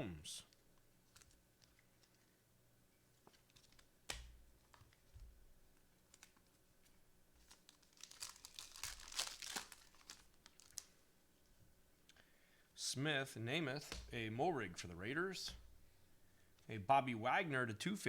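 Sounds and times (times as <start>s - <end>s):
foil wrapper crinkling and tearing: 7.4s - 11.0s.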